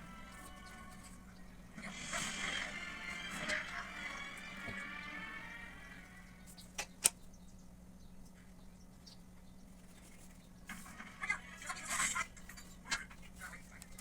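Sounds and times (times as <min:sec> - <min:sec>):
faint steady hum: 0:00.0 - 0:14.0
paper crinkling and rustling: 0:09.7 - 0:11.1, 0:11.7 - 0:14.0.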